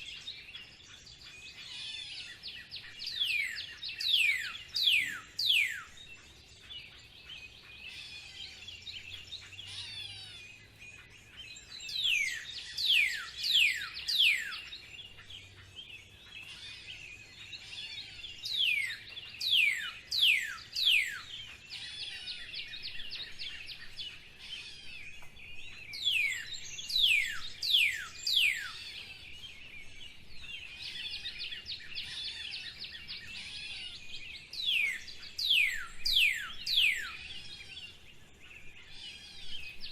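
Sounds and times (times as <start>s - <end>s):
birds chattering: 0.0s - 39.9s
bird whistling: 3.2s - 6.0s, 12.0s - 14.7s, 18.6s - 21.3s, 26.0s - 28.8s, 34.6s - 37.2s.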